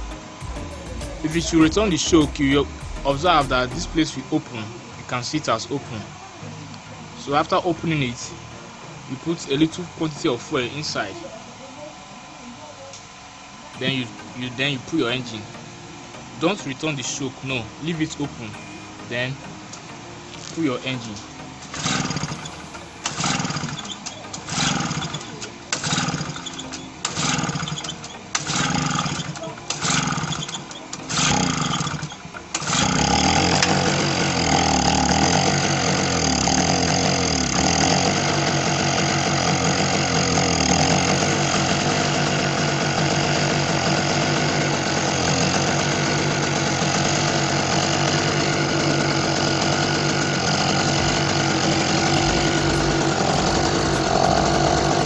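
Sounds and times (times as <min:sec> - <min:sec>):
generator engine running: 0:38.2 - 0:55.0.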